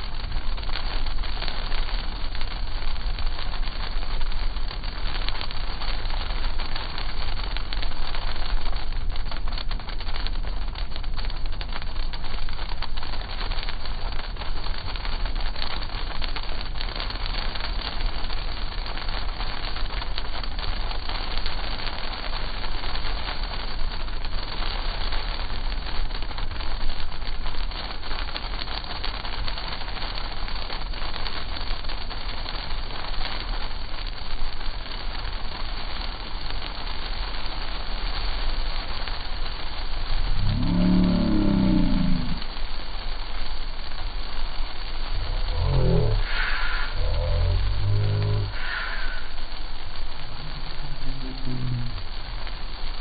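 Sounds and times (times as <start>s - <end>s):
car rumble: 3.7s - 13.7s, 44.7s - 52.9s.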